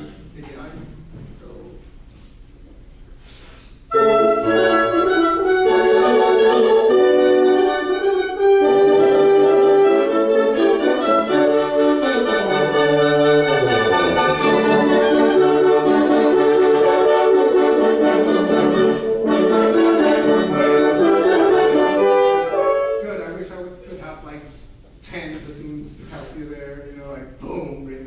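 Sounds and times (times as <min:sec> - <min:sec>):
woodwinds and horns playing: 0:03.9 - 0:23.5.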